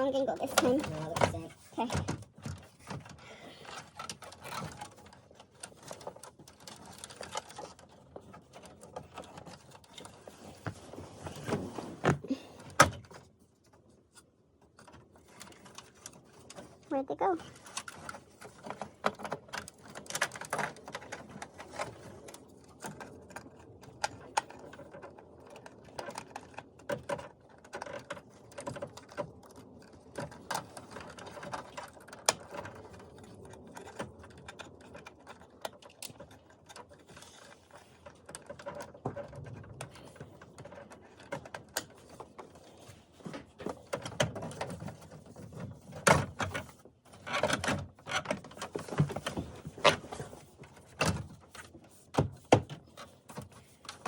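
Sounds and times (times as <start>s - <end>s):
plastic parts knocking: 0.1s - 13.2s, 33.8s - 54.0s.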